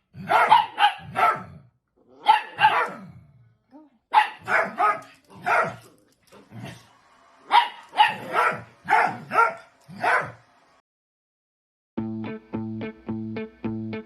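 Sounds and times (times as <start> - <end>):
dog barking: 0.1 - 3.1, 4.1 - 5.9, 7.5 - 10.4.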